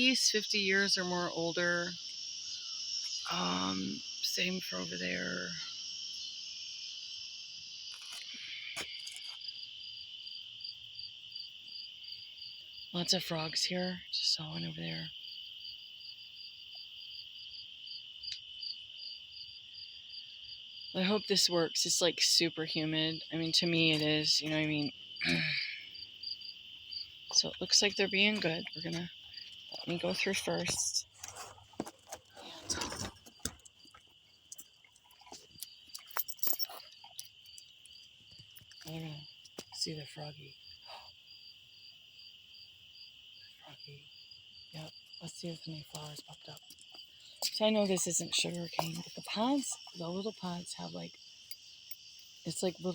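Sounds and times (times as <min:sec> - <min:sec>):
insect chirping: 0:00.0 - 0:52.9
night insects droning: 0:00.0 - 0:52.9
rustling: 0:29.0 - 0:37.1.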